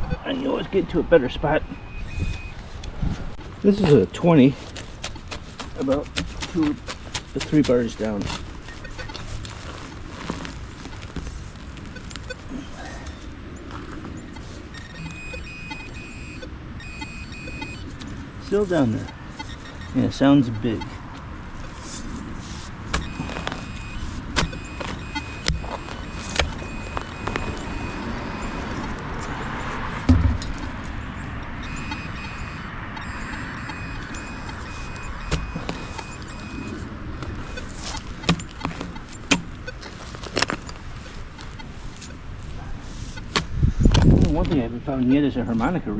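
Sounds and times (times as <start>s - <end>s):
metal detector beeping: 1.6s - 2.6s, 7.9s - 9.5s, 11.8s - 21.0s, 22.9s - 42.2s
digging tool scraping soil: 3.1s - 12.4s.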